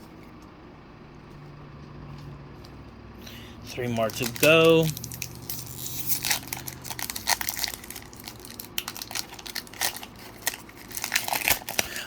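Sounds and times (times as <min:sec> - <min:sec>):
foil wrapper crinkling and tearing: 0:03.7 - 0:12.0.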